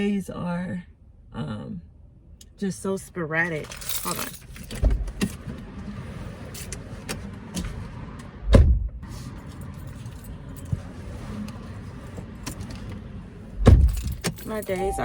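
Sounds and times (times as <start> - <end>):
keys jangling: 3.6 - 4.8, 13.8 - 15.0.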